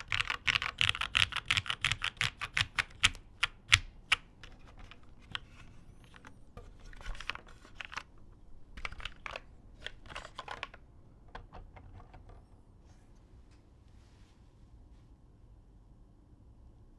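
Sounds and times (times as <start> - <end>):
typing on mechanical keyboard: 0.0 - 12.6.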